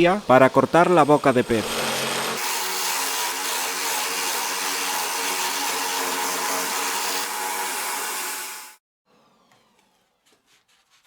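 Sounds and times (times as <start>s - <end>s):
drill hole saw cutting wood: 0.0s - 8.8s.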